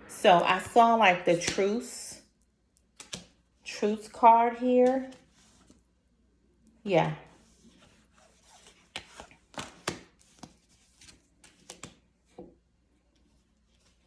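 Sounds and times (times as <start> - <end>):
cards tapping and flicking on table: 3.0 - 3.3, 8.9 - 10.6, 11.4 - 12.5.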